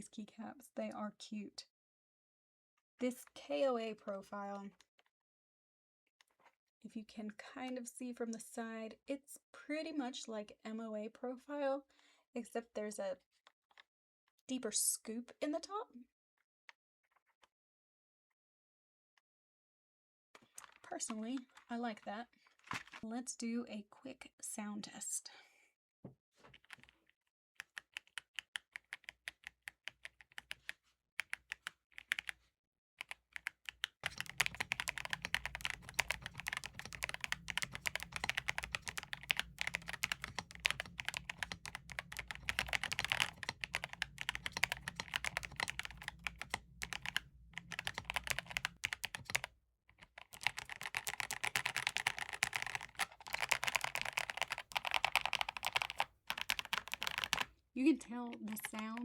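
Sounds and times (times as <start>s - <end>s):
typing on mechanical keyboard: 26.5s - 27.0s, 27.6s - 32.4s, 33.0s - 57.5s, 58.3s - 59.0s.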